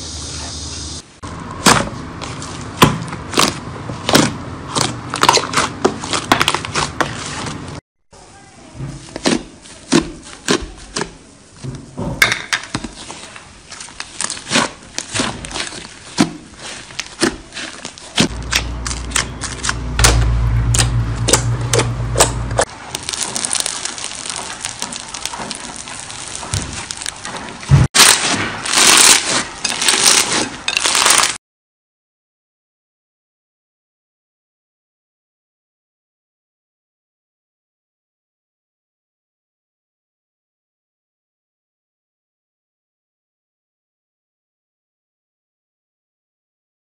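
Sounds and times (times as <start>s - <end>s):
slime clicking and crackling: 12.9s - 31.4s
low hum: 18.3s - 22.7s.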